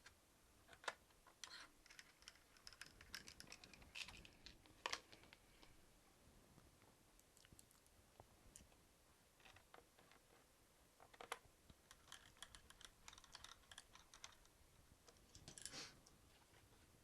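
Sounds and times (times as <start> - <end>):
plastic laptop parts clicking: 0.7 - 5.1, 11.0 - 14.5.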